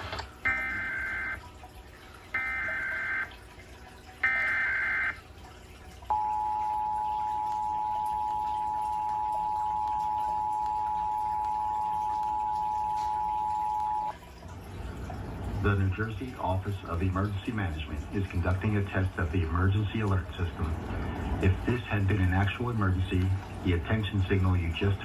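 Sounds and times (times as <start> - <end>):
data bursts: 0.4 - 1.4
two-tone attention signal: 0.4 - 1.4, 2.4 - 3.4, 4.2 - 5.2, 6.1 - 14.2.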